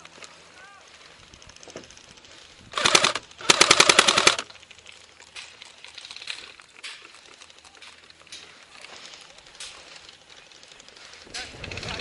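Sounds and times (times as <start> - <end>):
airsoft gun firing bursts: 2.7 - 4.5
faint scattered shots: 2.7 - 4.6.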